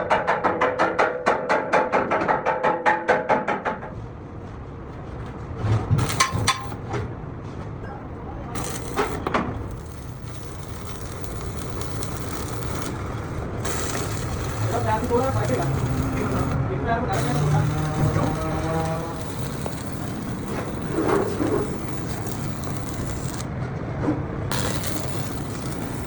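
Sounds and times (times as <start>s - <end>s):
clanks: 5.6s - 7.0s, 8.5s - 23.5s, 24.1s - 26.0s.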